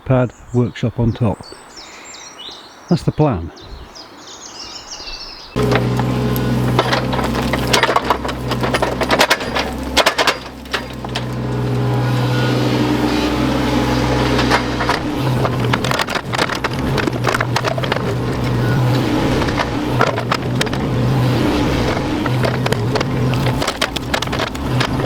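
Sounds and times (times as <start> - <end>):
excavator diesel engine running: 5.6 - 25.0
wood and earth cracking: 5.6 - 25.0.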